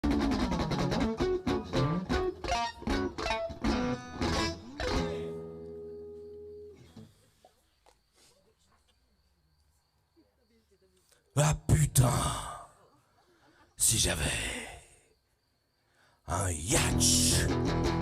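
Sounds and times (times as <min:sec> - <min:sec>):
guitar strumming chords: 0:00.0 - 0:06.7, 0:16.8 - 0:18.0.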